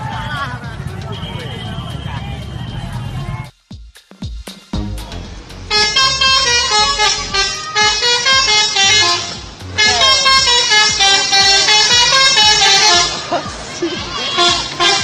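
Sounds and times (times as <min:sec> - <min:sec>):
musical bus horn tune: 0:05.5 - 0:15.0.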